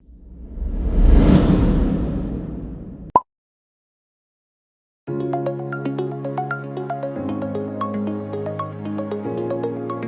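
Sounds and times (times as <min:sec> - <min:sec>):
cinematic whoosh: 0:00.0 - 0:03.1
deep rumble: 0:00.0 - 0:03.1.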